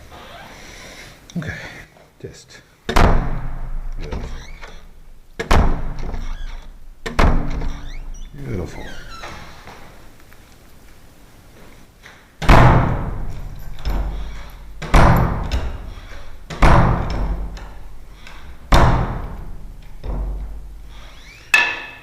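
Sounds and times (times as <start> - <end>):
door slamming with ringing decay: 12.4 - 18.0, 18.6 - 20.7.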